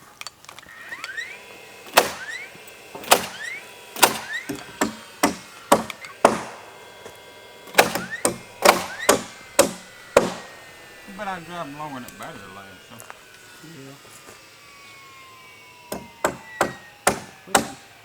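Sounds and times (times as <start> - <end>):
hammer blows on wood: 1.9 - 13.2, 15.9 - 18.0.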